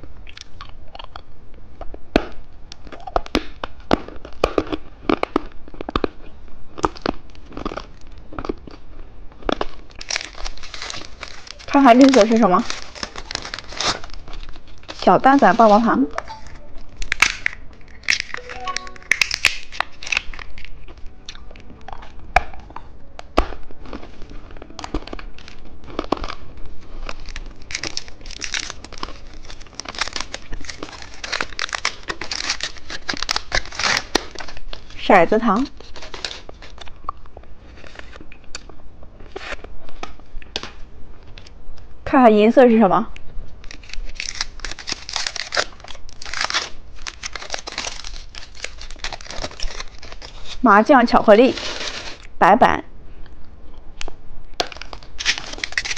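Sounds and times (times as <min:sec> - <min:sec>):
candy wrapper crinkling and tearing: 0:00.3 - 0:41.9, 0:43.3 - 0:52.4, 0:54.0 - 0:55.9
wrapper clicks: 0:15.7 - 0:20.8, 0:43.6 - 0:50.6, 0:54.6 - 0:55.9.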